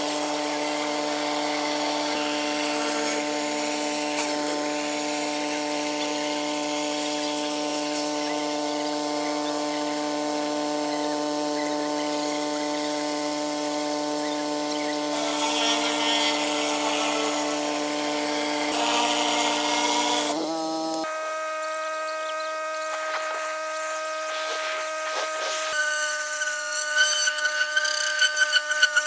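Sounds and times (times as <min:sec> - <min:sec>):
pressure washer running: 0:00.0 - 0:28.9
water spray hissing: 0:22.8 - 0:29.0.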